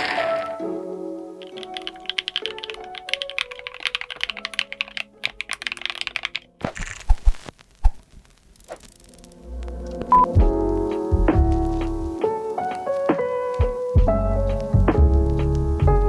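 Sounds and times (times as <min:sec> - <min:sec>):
background music: 0:00.0 - 0:06.7, 0:09.0 - 0:16.0
mechanical keyboard typing: 0:01.4 - 0:07.0.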